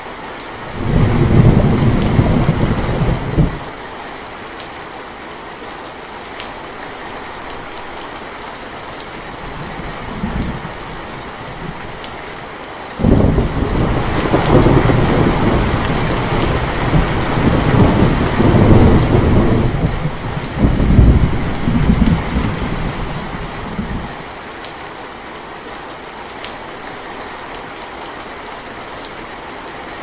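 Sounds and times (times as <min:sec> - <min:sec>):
steady rain falling: 0:00.0 - 0:30.0
thunder rumbling: 0:00.7 - 0:03.7, 0:13.0 - 0:24.1.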